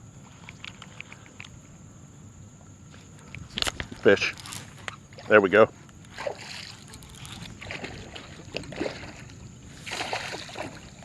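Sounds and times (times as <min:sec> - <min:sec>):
fish splashing at water surface: 0:06.2 - 0:11.0.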